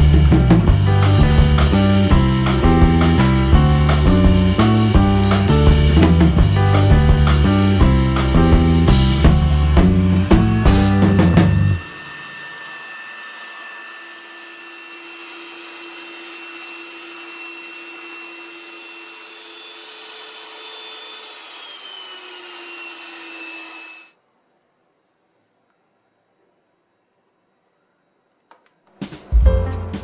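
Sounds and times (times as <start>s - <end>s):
kitchen mixer motor whirring: 9.6s - 24.1s.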